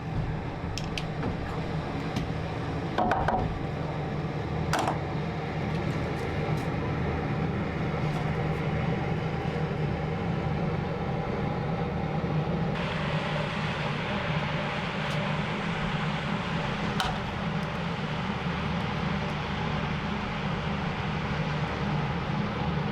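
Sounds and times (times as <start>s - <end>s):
machine humming: 0.0s - 22.9s.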